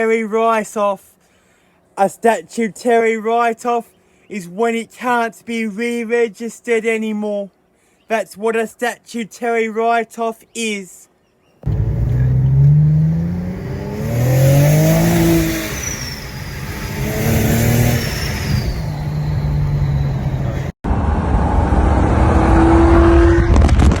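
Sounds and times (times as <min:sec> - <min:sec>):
car engine revving: 0:11.6 - 0:23.9.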